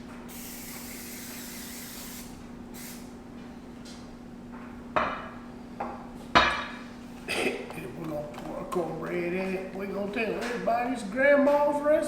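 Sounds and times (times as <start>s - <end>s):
aerosol spray hissing: 0.3s - 3.1s.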